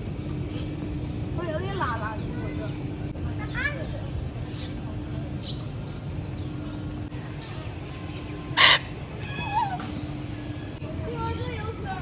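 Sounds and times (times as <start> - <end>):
bird harsh screech: 7.2 - 10.8.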